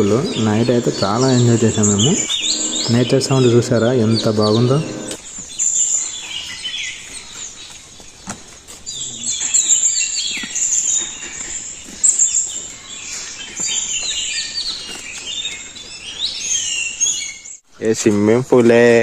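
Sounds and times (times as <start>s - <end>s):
birds chirping and calling: 0.0s - 17.6s.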